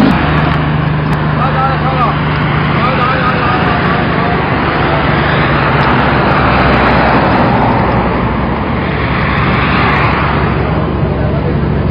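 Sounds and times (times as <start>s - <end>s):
wood chipper running: 0.0s - 6.8s.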